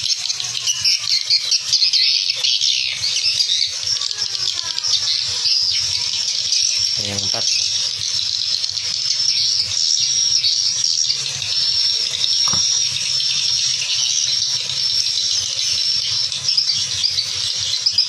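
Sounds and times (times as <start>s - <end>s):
high-pitched bird chirping: 0.0s - 18.0s.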